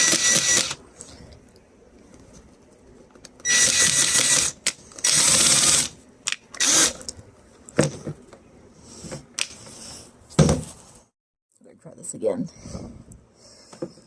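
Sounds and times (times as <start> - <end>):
power drill driving a screw: 0.0 - 0.8, 3.4 - 6.0, 6.6 - 7.0.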